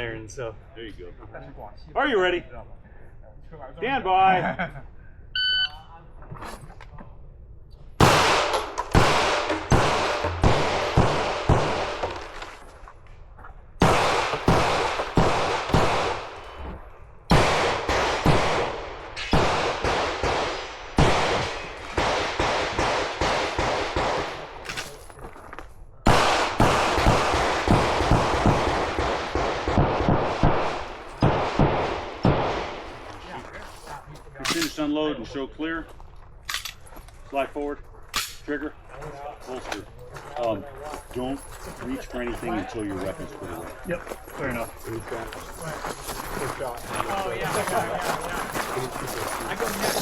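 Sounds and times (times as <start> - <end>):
pistol shots: 8.0 - 12.2, 13.8 - 16.6, 17.3 - 25.0, 26.1 - 33.0.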